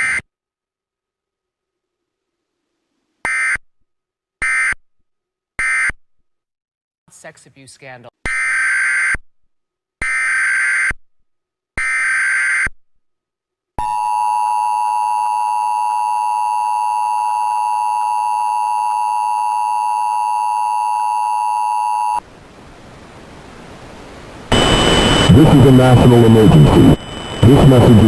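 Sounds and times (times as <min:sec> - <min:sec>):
faint hiss: 0:22.2 - 0:28.0.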